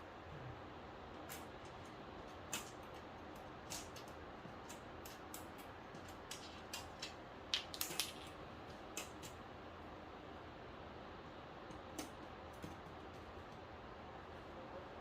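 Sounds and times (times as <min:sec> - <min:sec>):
faint room hiss: 0:00.0 - 0:15.0
small parts clicking: 0:01.3 - 0:09.4.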